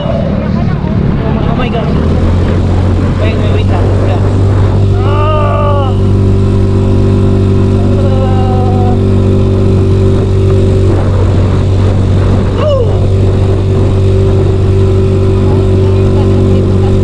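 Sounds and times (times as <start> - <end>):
scooter engine running: 0.0 - 17.0.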